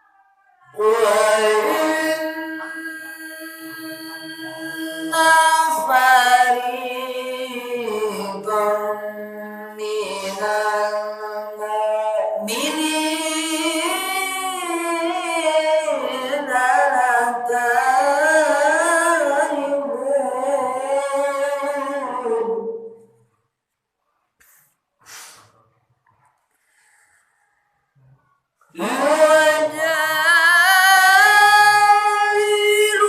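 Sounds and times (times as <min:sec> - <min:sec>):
person chanting long notes: 0:00.8 - 0:16.5.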